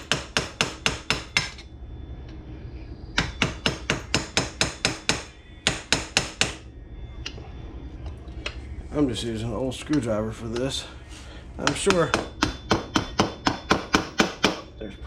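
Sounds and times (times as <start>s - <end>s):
hammer striking metal: 0.0s - 1.6s, 3.2s - 6.7s, 11.6s - 14.7s.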